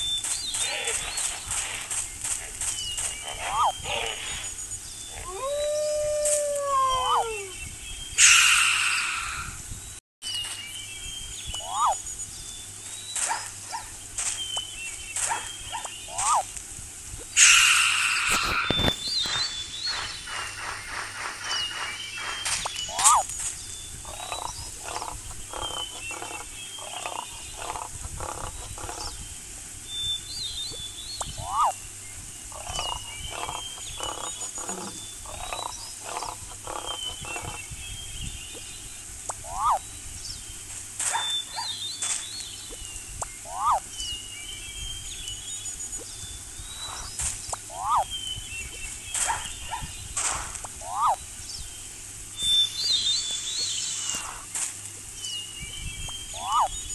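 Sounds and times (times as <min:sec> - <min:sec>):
high twittering bird chirps: 0:00.0 - 0:16.6, 0:17.3 - 0:56.9
quick repeated pulsed calls: 0:17.4 - 0:29.1, 0:52.4 - 0:54.6.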